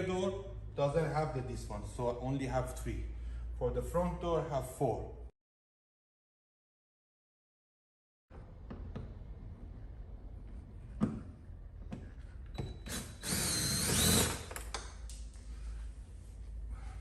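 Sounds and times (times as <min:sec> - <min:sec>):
cordless drill whining: 0:12.6 - 0:14.6.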